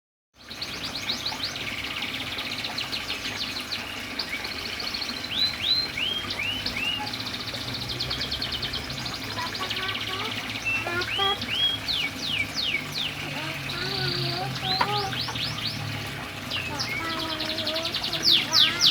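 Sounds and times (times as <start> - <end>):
canary trilling: 9.3 - 15.9, 16.5 - 18.9.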